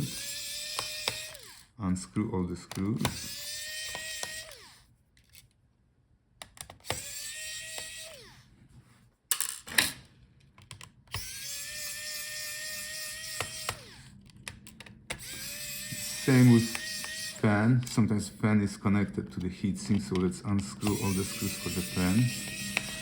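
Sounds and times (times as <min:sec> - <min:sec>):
electric screwdriver whining: 0:00.0 - 0:01.7, 0:02.7 - 0:04.9, 0:06.8 - 0:08.5, 0:11.1 - 0:18.4, 0:19.0 - 0:23.0.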